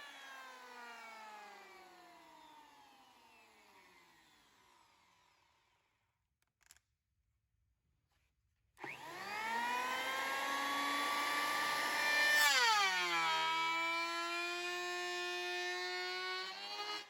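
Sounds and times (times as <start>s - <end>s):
power tool motor whining: 8.8s - 17.0s.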